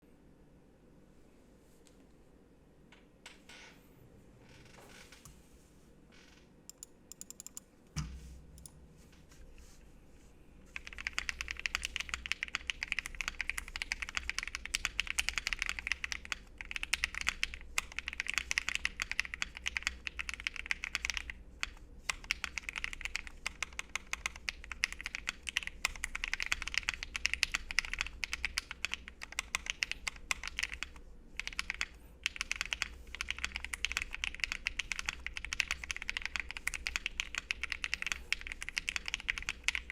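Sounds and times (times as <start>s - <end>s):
mechanical keyboard typing: 6.7s - 7.6s, 10.8s - 39.9s.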